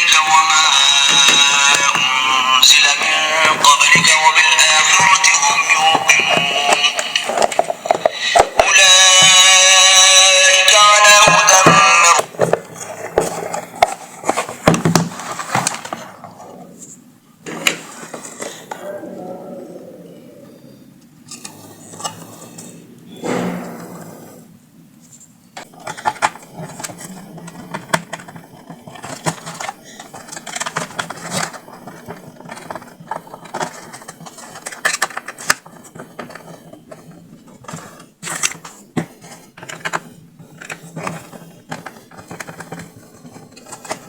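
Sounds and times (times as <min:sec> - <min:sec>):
small tools clicking and scraping: 0:25.6 - 0:44.0.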